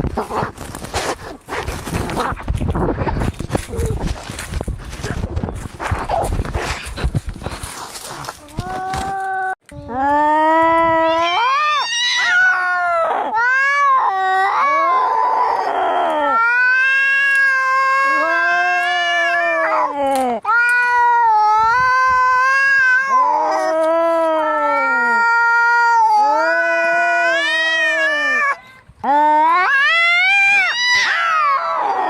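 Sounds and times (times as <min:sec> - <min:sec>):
cats yowling: 0:11.0 - 0:32.0.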